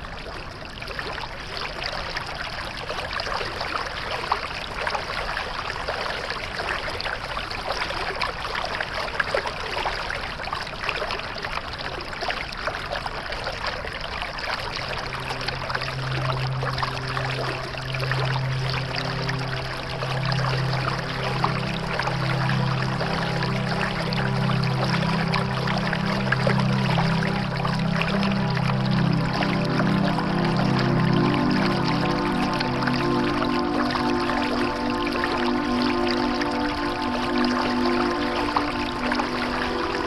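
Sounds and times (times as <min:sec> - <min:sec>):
stream trickling and splashing: 0:00.0 - 0:40.0
soft music with low held notes: 0:14.7 - 0:40.0.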